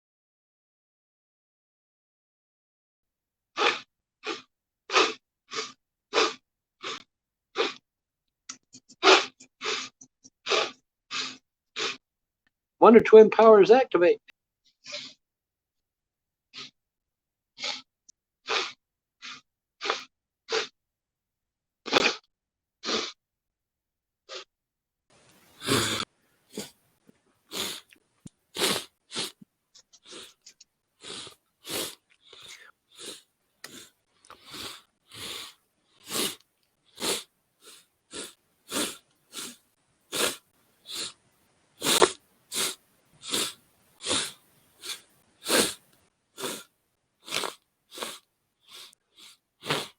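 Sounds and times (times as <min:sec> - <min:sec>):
quick nose sniffs: 0:03.6 - 0:07.8, 0:08.5 - 0:12.0, 0:14.8 - 0:15.2, 0:16.5 - 0:16.8, 0:17.6 - 0:17.9, 0:18.5 - 0:20.7, 0:21.9 - 0:22.2, 0:22.8 - 0:23.2, 0:24.3 - 0:24.5, 0:25.4 - 0:26.8, 0:27.5 - 0:41.2, 0:41.8 - 0:49.9.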